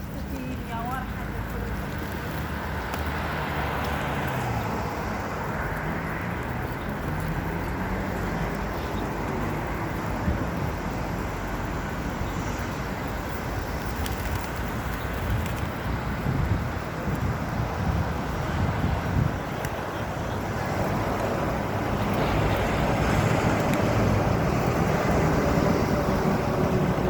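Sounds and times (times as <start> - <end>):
city traffic rumble: 0.0 - 27.0
wind gusts on microphone: 7.4 - 27.0.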